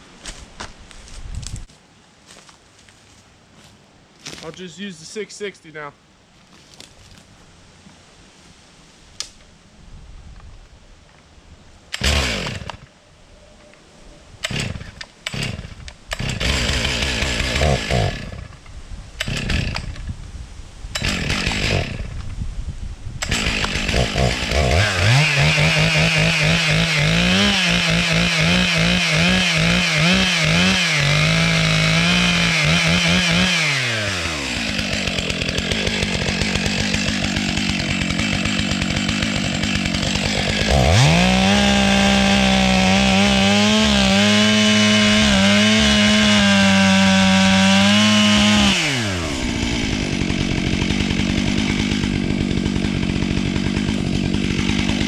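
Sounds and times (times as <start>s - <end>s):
chainsaw revving and cutting: 11.9s - 12.9s, 14.4s - 18.6s, 19.2s - 20.1s, 21.0s - 22.3s, 23.2s - 55.0s.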